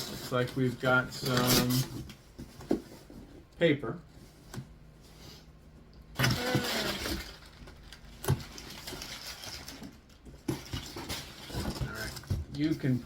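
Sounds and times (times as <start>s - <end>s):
packing paper rustling and crinkling: 0.0s - 3.1s, 6.2s - 13.0s.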